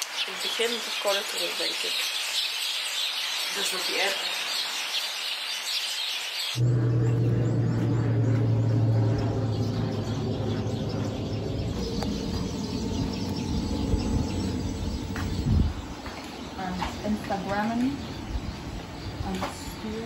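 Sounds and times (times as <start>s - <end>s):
small birds chirping: 0.0s - 20.0s
low hum and rumble: 6.6s - 20.0s.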